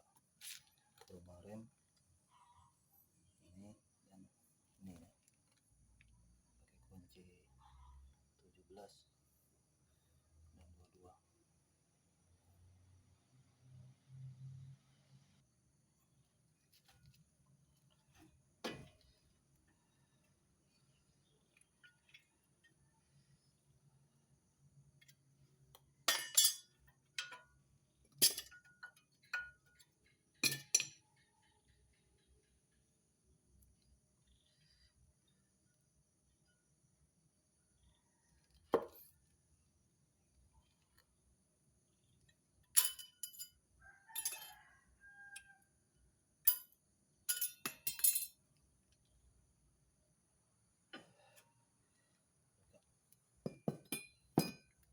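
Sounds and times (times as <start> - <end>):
metal tools clinking: 26.1 - 27.4, 28.2 - 29.8, 30.4 - 30.9, 42.8 - 43.6, 44.2 - 44.6, 47.3 - 48.4.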